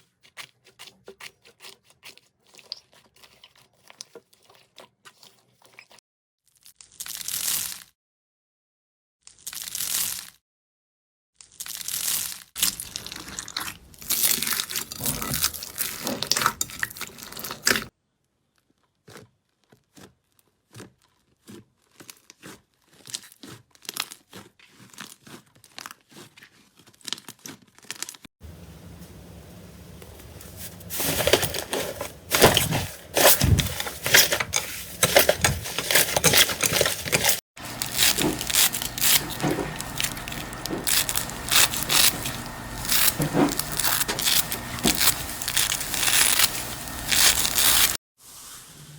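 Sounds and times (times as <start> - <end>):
slime crackling and squishing: 30.4 - 48.0.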